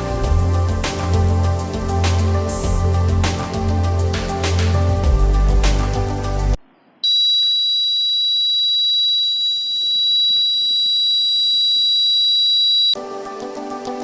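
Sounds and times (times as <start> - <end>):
background music: 0.0 - 6.6, 13.0 - 14.0
fire alarm buzzer tone: 7.0 - 13.0.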